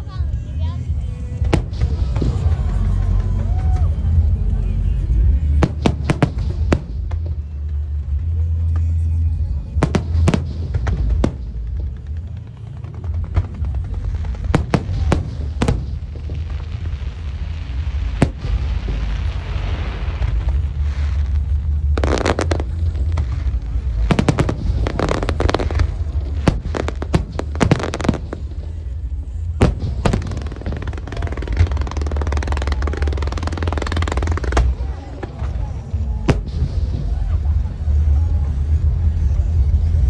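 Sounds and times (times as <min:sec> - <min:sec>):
firework crackling: 0:00.0 - 0:40.0
firework bangs: 0:01.3 - 0:04.4, 0:05.2 - 0:40.0
deep rumbling booms: 0:09.4 - 0:40.0.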